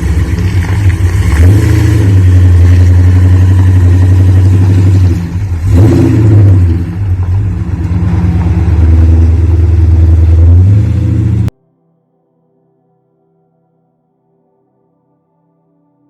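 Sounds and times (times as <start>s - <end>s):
loud car engine revving: 0.0s - 11.5s.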